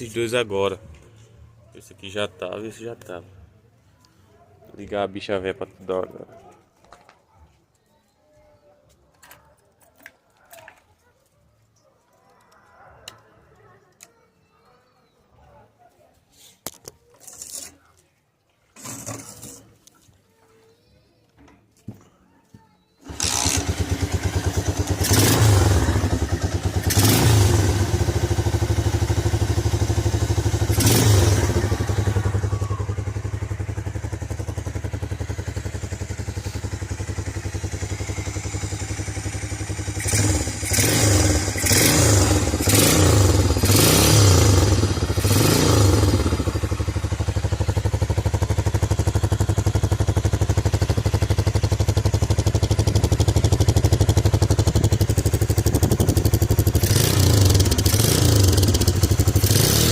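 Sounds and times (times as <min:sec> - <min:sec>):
motorcycle engine idling and revving: 0:23.0 - 0:59.9.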